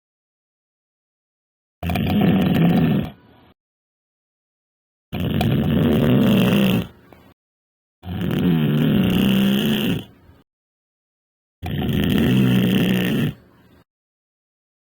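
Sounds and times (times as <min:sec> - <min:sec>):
person snoring: 0:01.8 - 0:03.2, 0:05.2 - 0:07.0, 0:08.0 - 0:10.2, 0:11.6 - 0:13.6.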